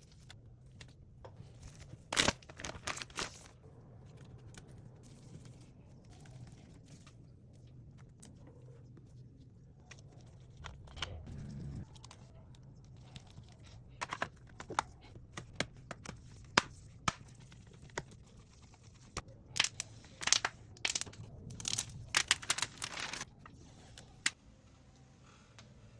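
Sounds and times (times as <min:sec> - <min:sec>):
plastic film crinkling and tearing: 0:01.6 - 0:03.6, 0:16.0 - 0:24.4.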